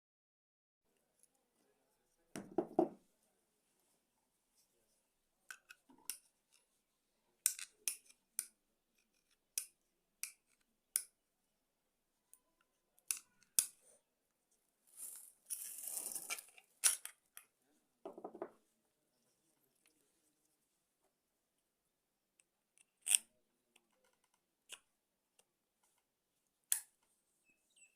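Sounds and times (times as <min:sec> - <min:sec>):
dull knock: 0:02.4 - 0:03.0, 0:18.1 - 0:18.5
scraping rustle: 0:14.9 - 0:16.5.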